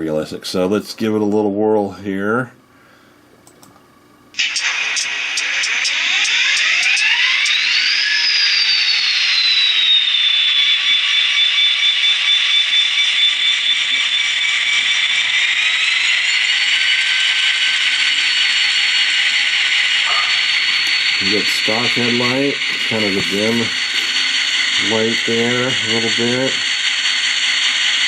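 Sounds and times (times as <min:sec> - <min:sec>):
high turbocharger whine: 0:04.4 - 0:28.0
model locomotive diesel engine sound: 0:05.6 - 0:28.0.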